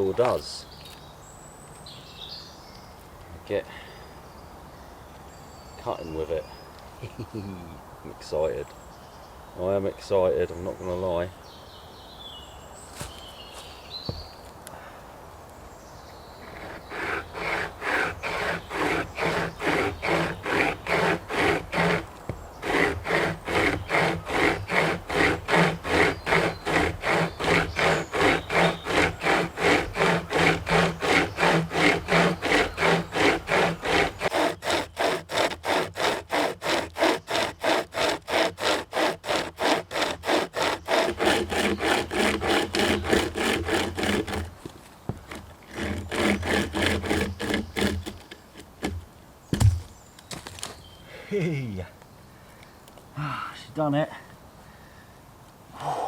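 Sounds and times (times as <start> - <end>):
hand chainsaw cutting log: 16.4 - 49.9.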